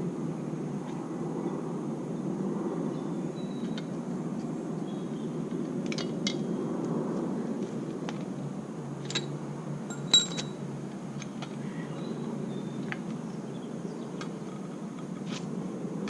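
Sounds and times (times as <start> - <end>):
metallic taps and clinks of tools: 9.9 - 10.6.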